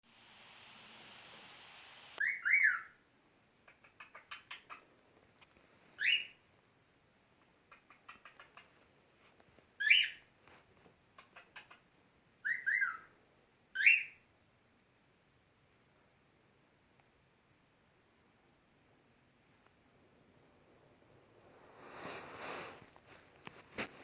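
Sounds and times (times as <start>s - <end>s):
cockatiel rising whistles: 2.2s - 2.8s.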